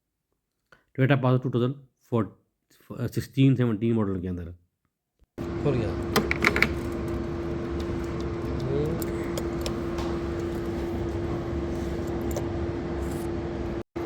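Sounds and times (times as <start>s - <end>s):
car engine idling: 5.4s - 12.3s.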